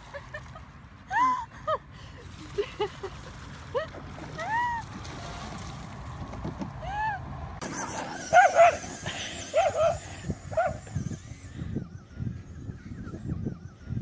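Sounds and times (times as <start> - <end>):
short arched animal calls: 7.6 - 13.9.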